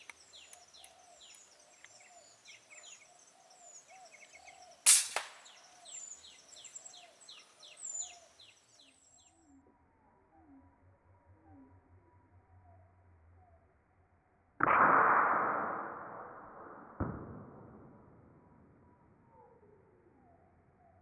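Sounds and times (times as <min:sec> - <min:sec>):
small birds chirping: 0:00.0 - 0:09.6
air rifle shot: 0:04.8 - 0:05.6, 0:14.6 - 0:18.1.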